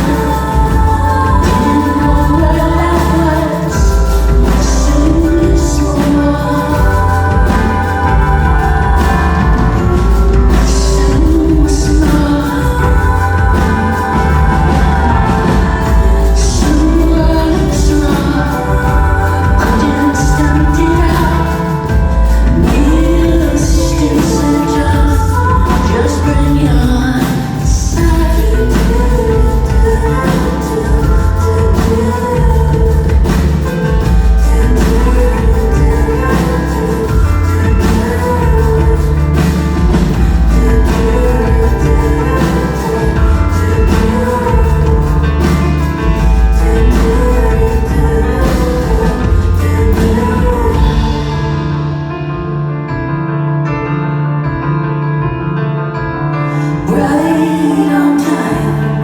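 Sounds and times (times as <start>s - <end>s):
woman singing: 0.0s - 52.4s, 56.3s - 59.0s
heavy bass line: 0.0s - 52.7s
pop-rock band playing: 0.0s - 59.0s.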